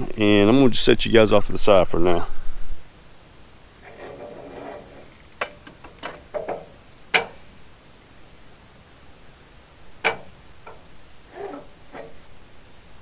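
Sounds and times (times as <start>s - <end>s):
sharp clicks and knocks: 3.9s - 7.5s, 10.0s - 12.2s.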